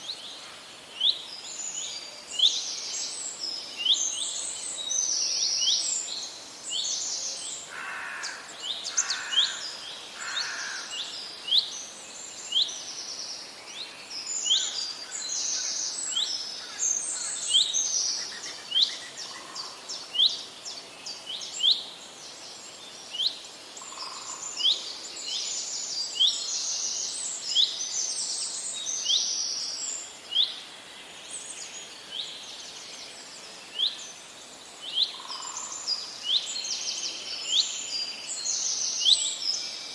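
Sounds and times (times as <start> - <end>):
songbirds chorus: 0.0 - 39.9.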